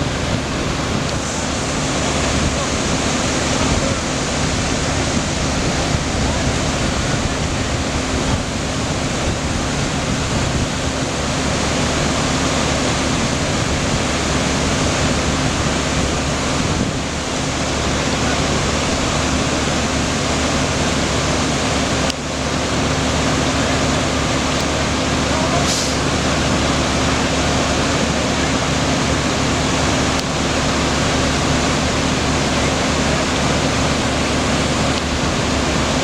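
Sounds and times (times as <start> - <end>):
floodwater rushing: 0.0 - 36.0.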